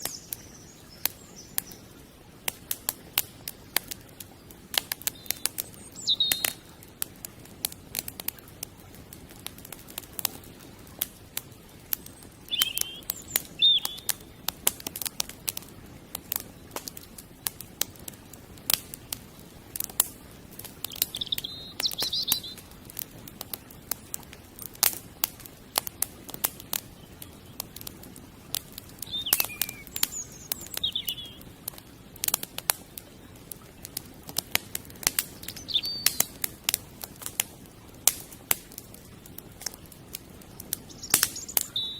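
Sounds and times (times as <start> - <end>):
campfire crackling: 0.0 - 41.9
bird chirps: 5.1 - 6.6, 12.5 - 14.1, 20.9 - 22.6, 29.0 - 31.5, 35.4 - 36.3, 40.9 - 41.9.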